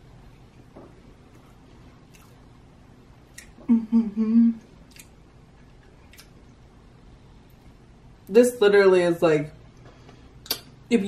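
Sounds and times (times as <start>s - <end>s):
quiet chewing: 0.2s - 3.7s, 4.6s - 6.7s
wet mouth clicks: 3.3s - 3.7s, 4.8s - 5.2s, 6.0s - 6.4s, 10.4s - 10.7s
woman humming with mouth full: 3.6s - 4.7s.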